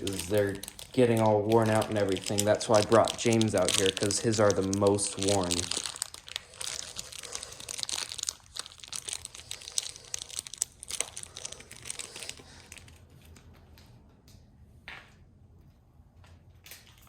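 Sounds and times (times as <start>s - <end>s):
packaging crinkling and tearing: 0.0s - 13.0s.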